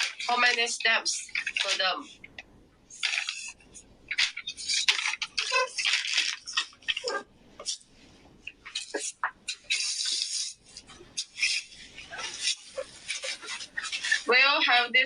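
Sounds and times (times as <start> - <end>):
plastic packaging crinkling: 0.0 - 1.9, 2.9 - 7.8, 8.5 - 14.3.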